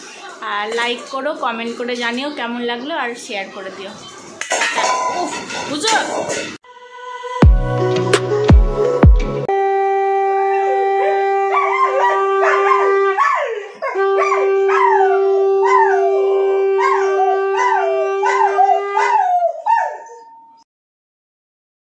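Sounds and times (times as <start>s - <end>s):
falling yelp-like electronic cries: 9.6s - 19.5s.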